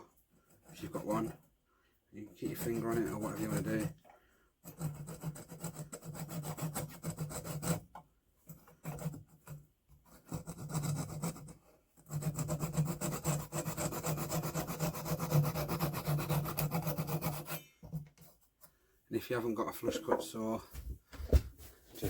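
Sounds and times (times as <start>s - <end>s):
hand saw sawing wood: 0.0s - 1.5s, 2.2s - 4.0s, 4.6s - 18.4s.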